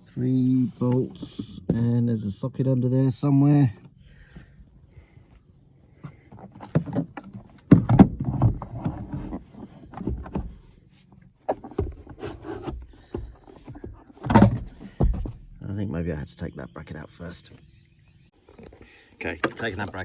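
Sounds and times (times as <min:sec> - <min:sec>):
subwoofer box knocking and scraping: 0:06.4 - 0:10.8, 0:11.4 - 0:15.6.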